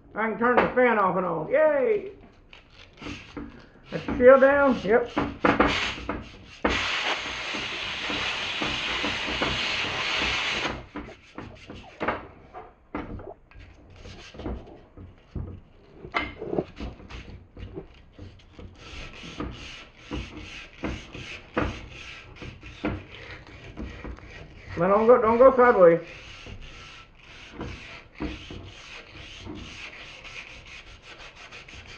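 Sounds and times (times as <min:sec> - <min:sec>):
rubbing and scraping: 0:01.8 - 0:31.9
compressed air hissing: 0:05.5 - 0:12.2.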